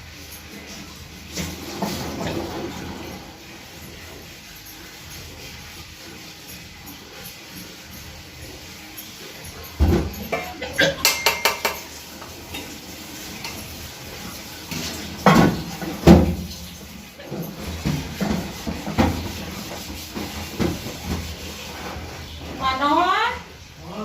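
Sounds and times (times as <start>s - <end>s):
metallic ringing: 2.7s - 12.8s.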